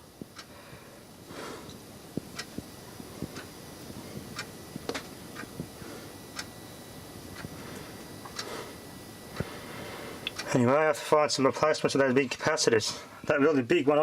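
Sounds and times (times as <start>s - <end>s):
regular sharp ticking: 0.1s - 10.8s.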